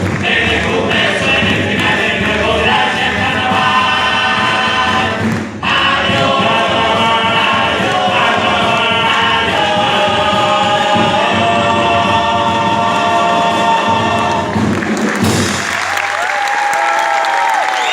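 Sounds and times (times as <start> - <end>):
audience applauding: 0.0 - 2.0, 14.2 - 17.9
choir singing held chords: 0.0 - 15.6.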